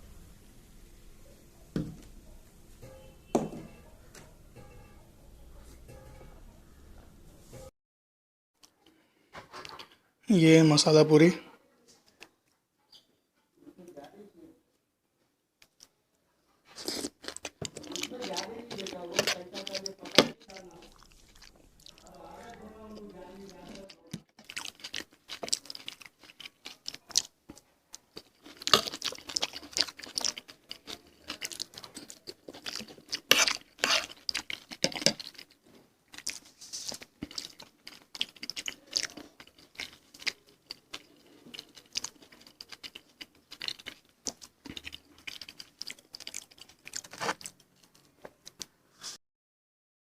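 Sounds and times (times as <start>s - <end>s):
chewing crisp snacks: 15.6s - 16.0s, 16.7s - 48.8s.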